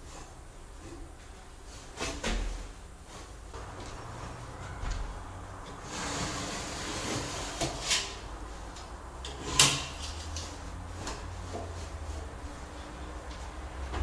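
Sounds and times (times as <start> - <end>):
rustling and scraping: 0.0 - 14.0.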